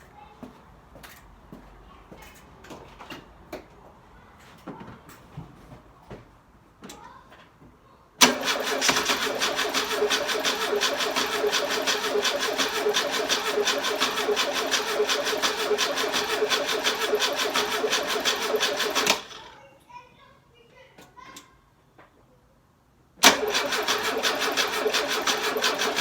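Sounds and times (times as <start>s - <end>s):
engine cranking and running: 8.2s - 19.6s, 23.2s - 26.0s.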